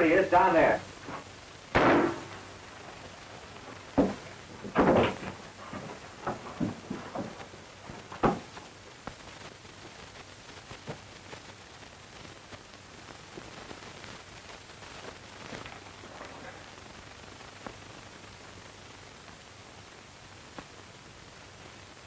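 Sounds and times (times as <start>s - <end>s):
film soundtrack hiss and crackle: 0.0s - 22.0s
loud sharp knock: 1.7s - 2.3s.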